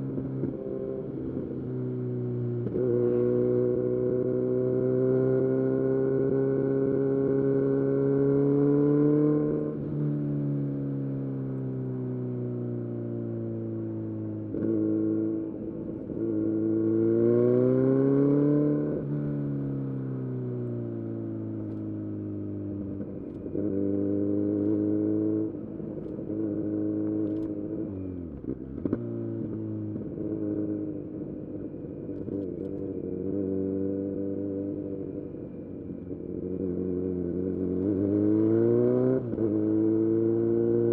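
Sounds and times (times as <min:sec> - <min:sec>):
motorcycle engine revving: 0:36.5 - 0:40.9.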